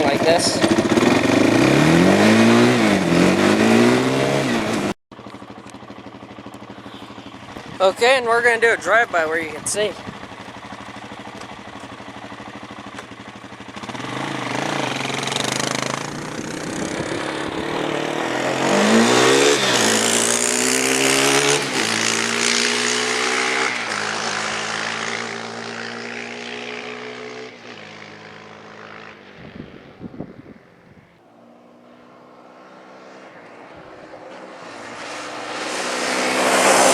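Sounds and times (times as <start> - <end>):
quad bike engine driving by: 0.0 - 36.9.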